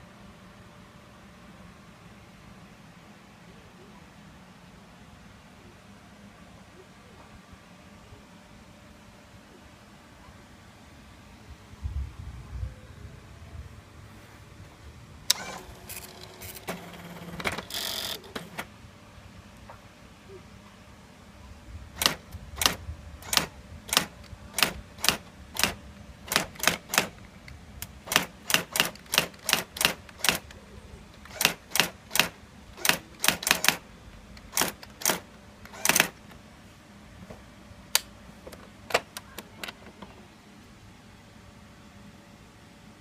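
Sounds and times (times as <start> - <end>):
electronic typewriter typing: 15.4 - 18.7, 22.0 - 30.6, 31.2 - 33.8, 34.4 - 36.3.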